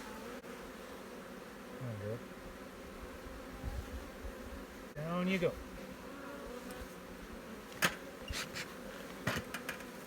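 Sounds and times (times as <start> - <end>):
bee swooping hum: 0.0 - 10.0
honey bees buzzing: 0.0 - 10.0.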